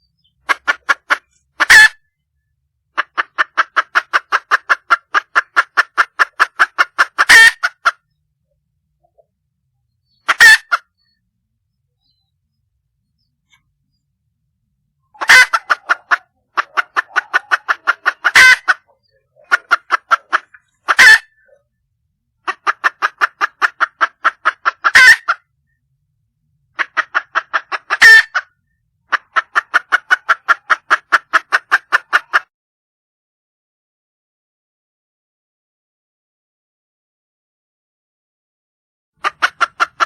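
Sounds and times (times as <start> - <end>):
junglefowl hen clucking: 0.1 - 2.2, 2.9 - 8.1, 10.0 - 11.2, 15.1 - 21.6, 22.4 - 25.5, 26.8 - 32.5, 39.2 - 40.0.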